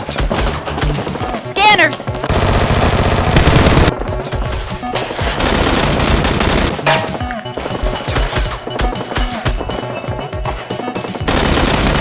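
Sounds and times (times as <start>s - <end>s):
background music: 0.0s - 12.0s
automatic gunfire: 2.3s - 3.9s, 11.3s - 12.0s.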